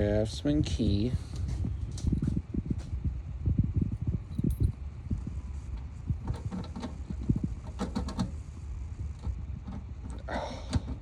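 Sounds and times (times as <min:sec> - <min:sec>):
keys jingling: 0:04.3 - 0:04.8.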